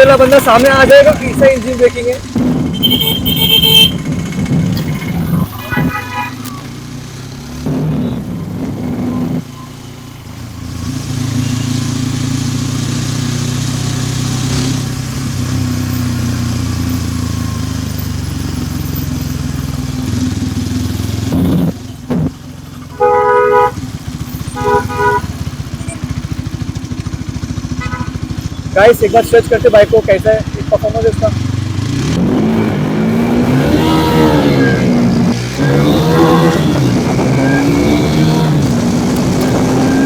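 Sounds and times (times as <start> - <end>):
motorcycle engine running: 0.0 - 40.0
vehicle horn honking: 2.7 - 4.1, 5.5 - 6.6, 22.9 - 23.9, 24.5 - 25.5, 27.7 - 28.4, 33.5 - 40.0.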